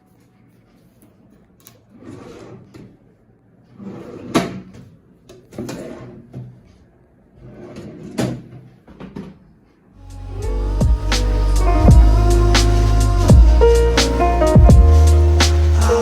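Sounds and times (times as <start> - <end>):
furniture sliding and scraping: 1.9 - 3.0, 3.7 - 4.7, 5.5 - 6.5, 7.4 - 8.8.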